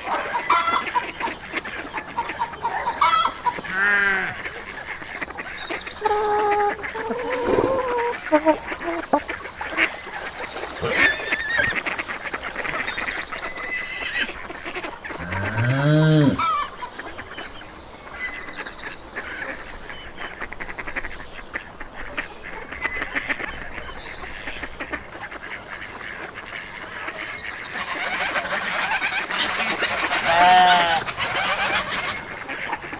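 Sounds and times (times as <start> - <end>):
geese honking: 0.0 - 17.0, 24.8 - 32.9
ducks quacking: 0.0 - 17.3, 18.8 - 32.9
loud low drawn-out animal call: 3.0 - 4.6, 6.0 - 9.2, 10.5 - 11.9, 15.1 - 16.8, 27.9 - 32.4.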